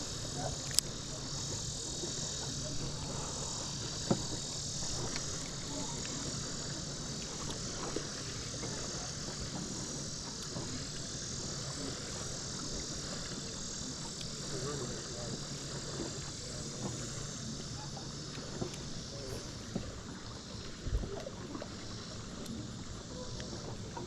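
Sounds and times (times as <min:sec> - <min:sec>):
low steady hum: 0:00.0 - 0:24.0
night insects chirring: 0:00.0 - 0:24.0
faint clicks: 0:00.6 - 0:01.0, 0:13.2 - 0:14.4.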